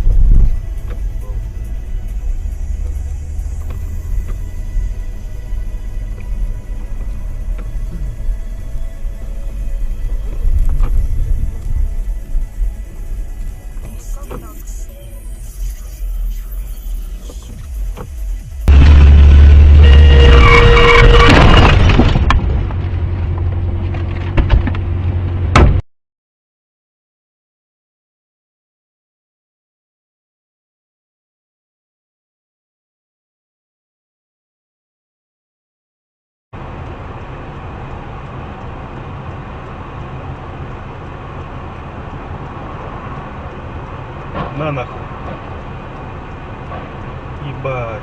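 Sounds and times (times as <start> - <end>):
loud low vehicle rumble: 0.0 - 25.8, 36.6 - 48.0.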